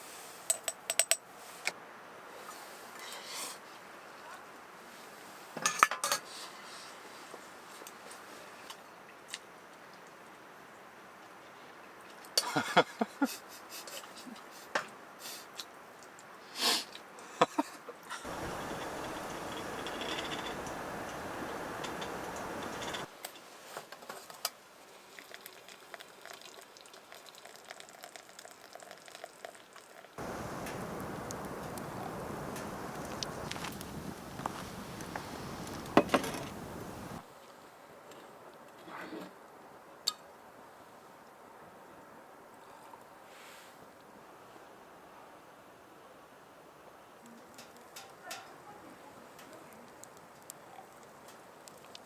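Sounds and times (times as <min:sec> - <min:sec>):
low steady hiss: 0:00.0 - 0:52.0
food sizzling and crackling: 0:18.3 - 0:23.1, 0:30.2 - 0:37.2
utensils clinking on dishes: 0:18.3 - 0:23.1.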